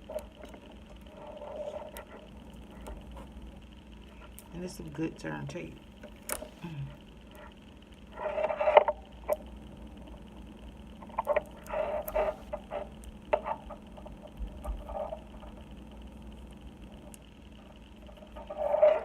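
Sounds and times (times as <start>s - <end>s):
hands rubbing tape: 11.2s - 13.6s.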